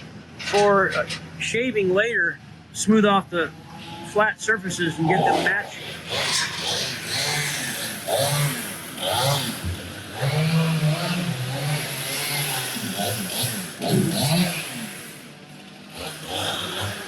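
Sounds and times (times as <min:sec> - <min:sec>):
engine revving in bursts: 0:05.0 - 0:17.0.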